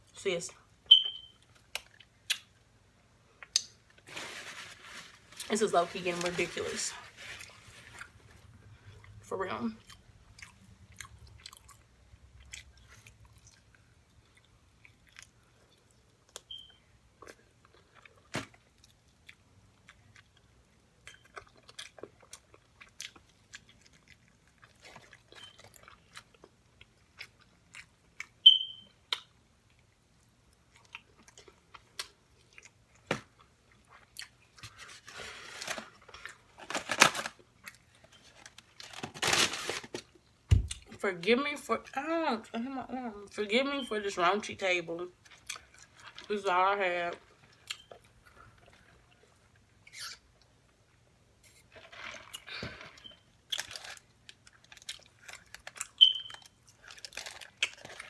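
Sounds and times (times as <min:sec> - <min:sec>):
rustling and crunching: 0:04.0 - 0:08.5, 0:34.5 - 0:40.8, 0:53.5 - 0:58.0
chewing and biting food: 0:17.2 - 0:28.4, 0:53.5 - 0:58.0.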